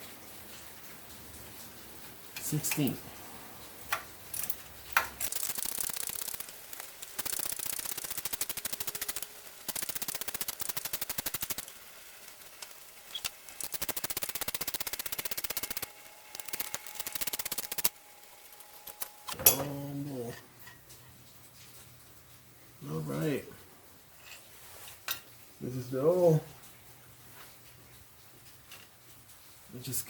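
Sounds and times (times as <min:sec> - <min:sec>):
ratchet tool clicking: 0:04.4 - 0:17.9.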